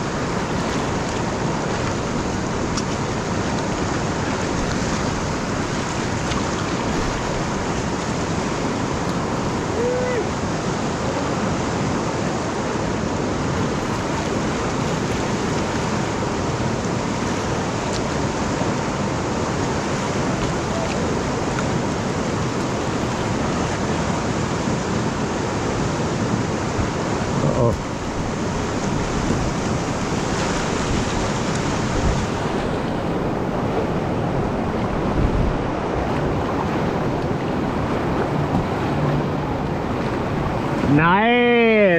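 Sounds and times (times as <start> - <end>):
river rapids rushing: 0.0 - 41.9
wind buffeting microphone: 25.9 - 40.9.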